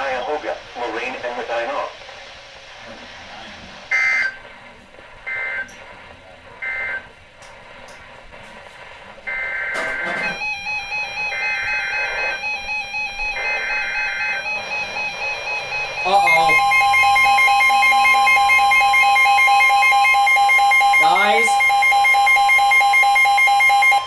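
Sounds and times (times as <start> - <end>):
steady electronic alarm tone: 3.9 - 4.4, 5.2 - 5.7, 6.6 - 7.0, 9.3 - 24.0
warbling digital data bursts: 9.3 - 24.0.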